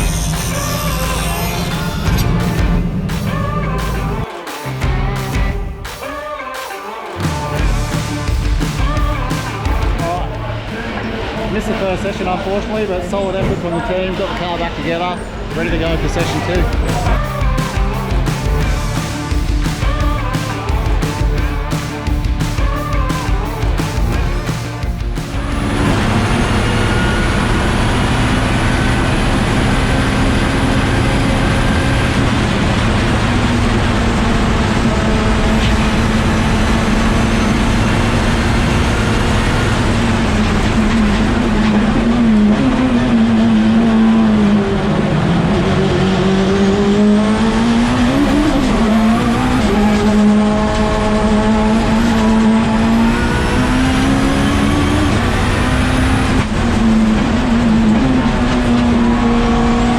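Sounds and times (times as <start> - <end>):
race car engine running hard: 0.0 - 5.9, 7.2 - 59.9.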